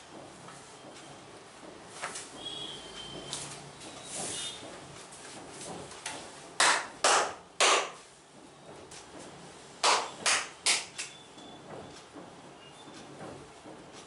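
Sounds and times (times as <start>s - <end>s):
hands slapping body: 9.8s - 11.1s.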